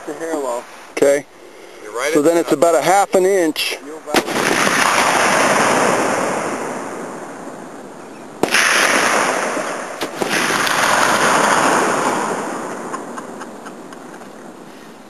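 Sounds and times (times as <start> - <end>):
rifle shot with rolling boom: 4.1 - 13.4.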